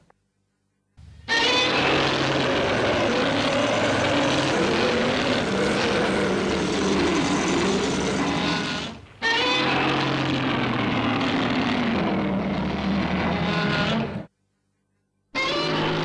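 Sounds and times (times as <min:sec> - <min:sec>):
aircraft engine drone: 0:01.4 - 0:14.2.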